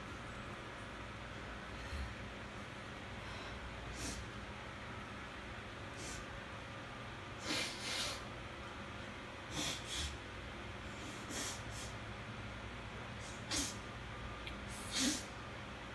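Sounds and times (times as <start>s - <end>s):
person sniffing hard: 7.4s - 8.2s, 13.2s - 13.8s, 14.7s - 15.3s.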